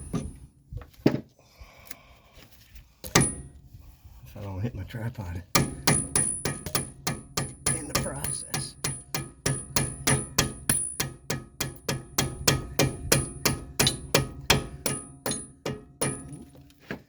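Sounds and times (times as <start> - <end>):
hammer tapping on metal bolt: 3.1 - 3.5, 5.6 - 16.4.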